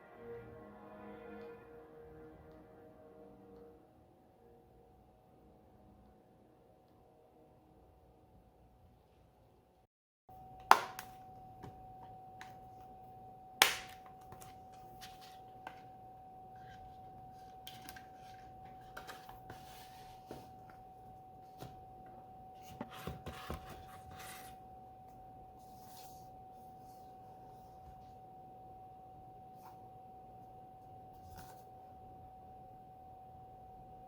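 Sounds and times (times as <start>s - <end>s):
faint steady tone: 10.3s - 34.0s.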